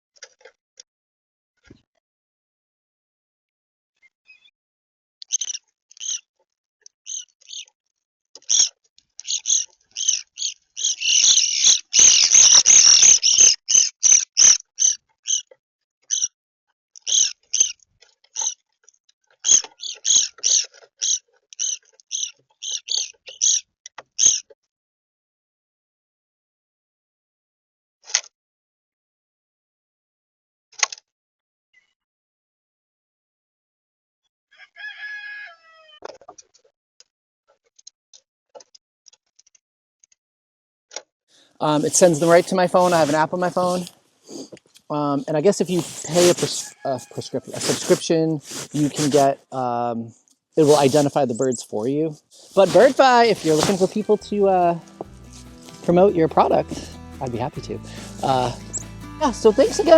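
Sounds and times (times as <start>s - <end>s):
rooster crowing: 34.5s - 36.0s
high-pitched chirps: 57.8s - 59.9s.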